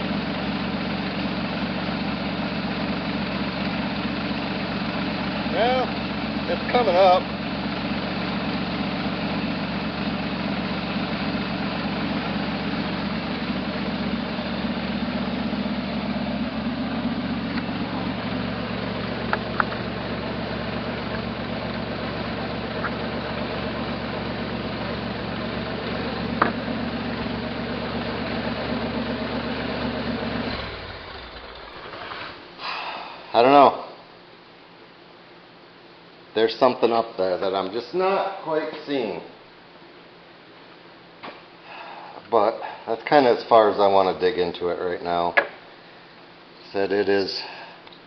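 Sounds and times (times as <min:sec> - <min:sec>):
engine idling with misfire: 0:00.0 - 0:33.3.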